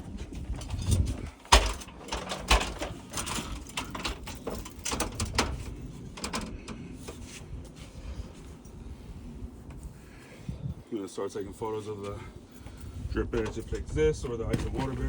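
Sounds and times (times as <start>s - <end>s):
ladder clanks and knocks: 0.5s - 6.7s.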